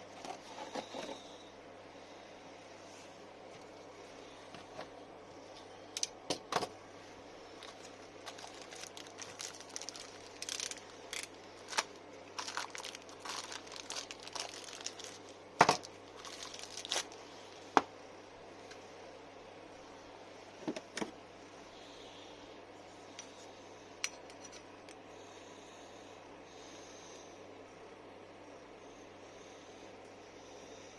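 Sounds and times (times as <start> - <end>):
crinkling and rustling: 7.6 - 17.7.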